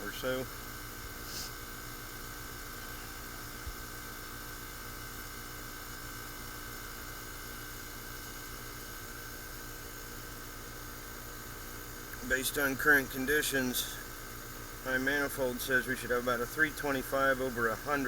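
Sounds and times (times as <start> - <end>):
heat pump humming: 0.0 - 18.0.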